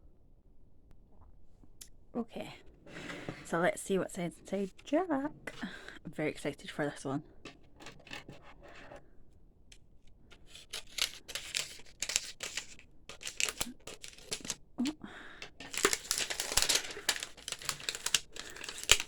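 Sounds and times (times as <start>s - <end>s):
plastic wrapping tearing and crinkling: 10.4s - 14.9s, 15.5s - 19.0s.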